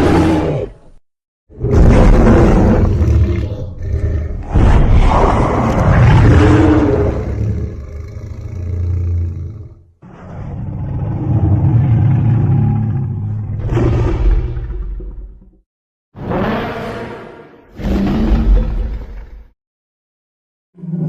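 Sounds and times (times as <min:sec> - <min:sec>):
deep monster roar: 0:01.5 - 0:15.5.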